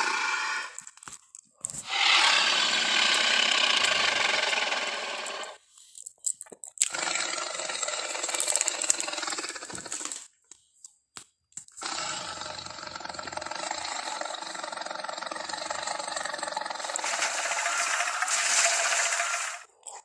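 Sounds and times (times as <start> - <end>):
monster roar: 0.0 - 0.8, 1.8 - 5.6, 6.9 - 10.2, 11.8 - 19.7.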